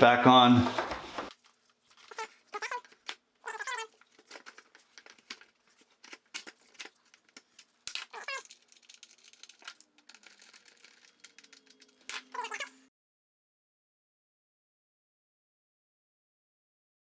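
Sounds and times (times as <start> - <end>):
clicks and knocks of parts: 0.6 - 12.8
short squeaks of parts: 2.0 - 4.6, 8.0 - 8.7, 10.2 - 12.9.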